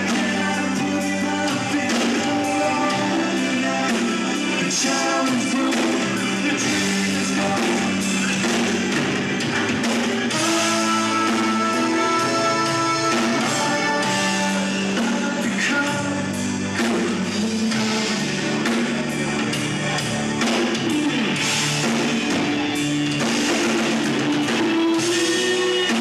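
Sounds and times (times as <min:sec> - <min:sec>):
person singing: 0:00.0 - 0:09.0, 0:10.3 - 0:19.2, 0:23.3 - 0:26.0
guitar: 0:00.0 - 0:26.0
live rock band playing: 0:00.0 - 0:26.0.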